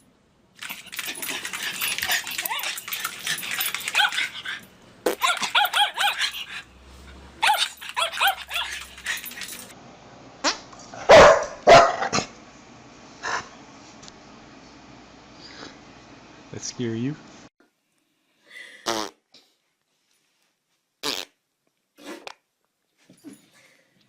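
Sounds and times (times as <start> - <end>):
dog yipping: 1.0 - 6.6, 7.4 - 9.7, 11.1 - 12.0.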